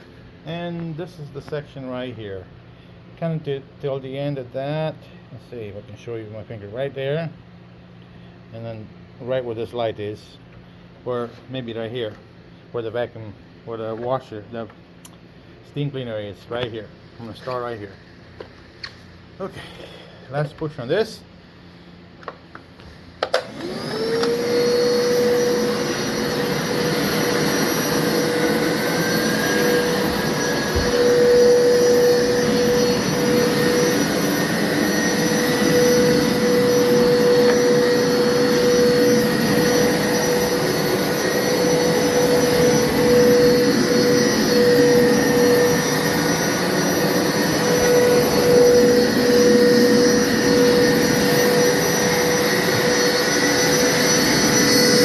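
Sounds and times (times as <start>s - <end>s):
carpet washer motor whining: 23.2s - 55.0s
suction noise: 23.6s - 55.0s.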